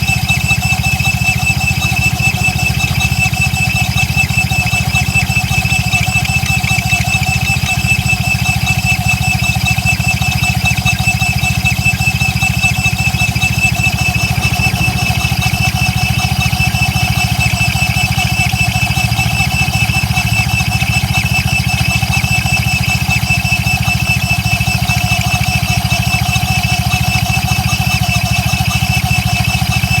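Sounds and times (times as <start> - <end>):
high squeal: 0.0 - 30.0
scooter engine idling: 0.0 - 30.0.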